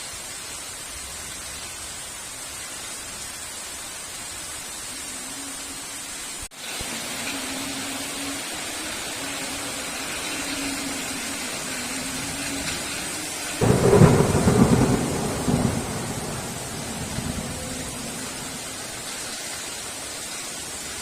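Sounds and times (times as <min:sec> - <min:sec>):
heavy rain: 0:00.0 - 0:21.0
thunder clap rumbling: 0:11.4 - 0:19.2.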